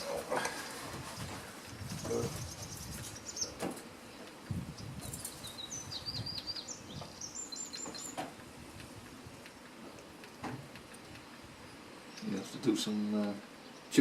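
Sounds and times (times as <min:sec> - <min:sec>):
wind rumbling on microphone: 0:00.0 - 0:03.8, 0:04.4 - 0:07.4
small songbird chirping: 0:01.1 - 0:08.3.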